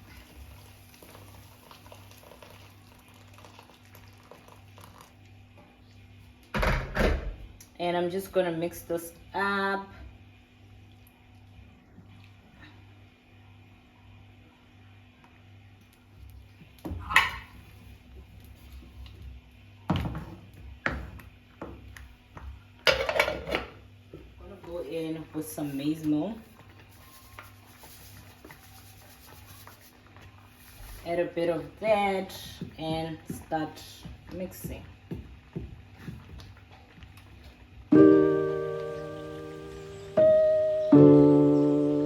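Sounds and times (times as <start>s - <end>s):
porridge bubbling in a pot: 0.0s - 6.4s, 24.7s - 37.9s.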